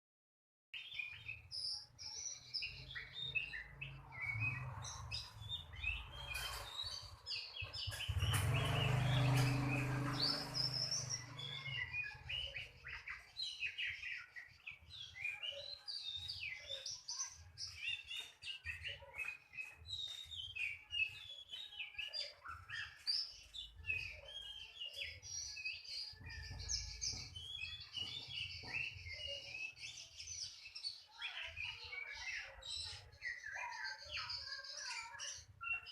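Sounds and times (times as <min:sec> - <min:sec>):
bird singing chirps and whistles: 0:10.2 - 0:35.9.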